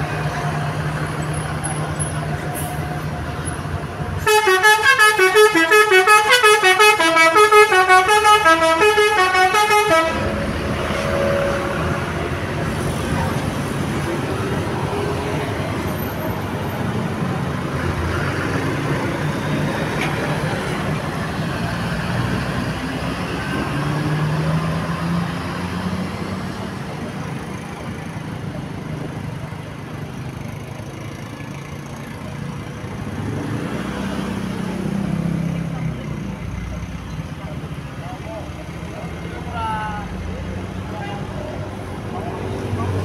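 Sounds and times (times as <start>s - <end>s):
heavy engine drone: 0.0s - 24.0s
passing vehicles rumble: 0.0s - 43.0s.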